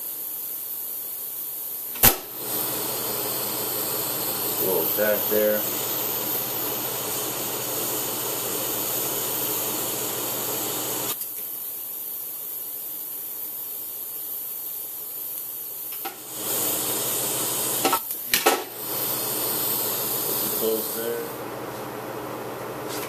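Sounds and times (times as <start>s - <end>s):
welding arc hissing: 0.0s - 21.4s.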